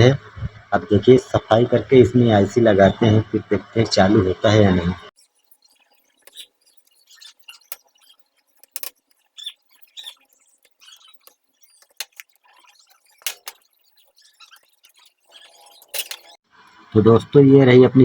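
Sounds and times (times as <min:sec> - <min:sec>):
small hard parts clicking: 0:05.2 - 0:16.4.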